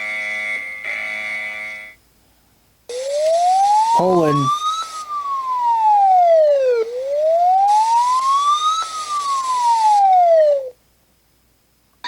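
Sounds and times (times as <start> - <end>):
emergency warning siren wailing: 2.9 - 10.7.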